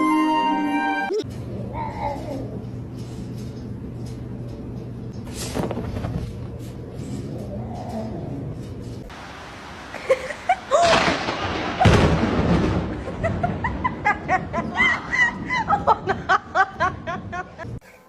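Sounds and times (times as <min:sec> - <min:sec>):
person laughing: 0:09.9 - 0:11.1, 0:13.0 - 0:17.8.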